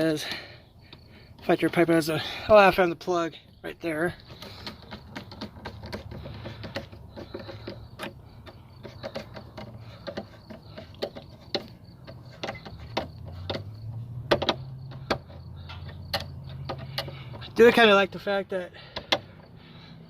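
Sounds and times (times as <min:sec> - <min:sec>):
plastic parts clicking and knocking: 0:04.1 - 0:17.6, 0:18.8 - 0:19.5.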